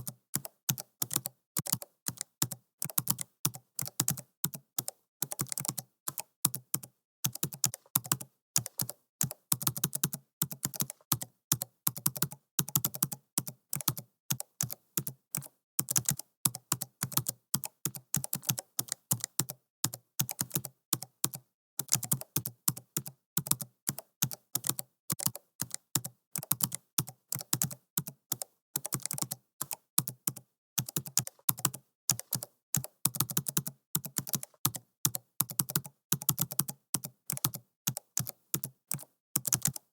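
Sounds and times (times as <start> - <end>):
computer keyboard typing: 0.0 - 39.9.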